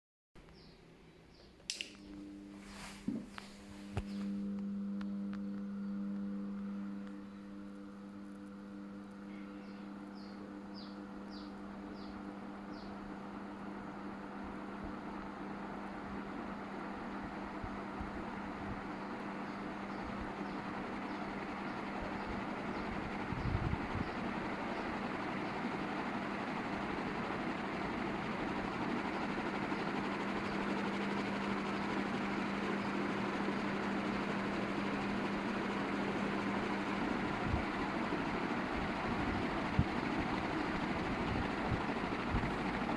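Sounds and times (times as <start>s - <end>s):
ceiling fan motor humming: 0.4s - 42.9s.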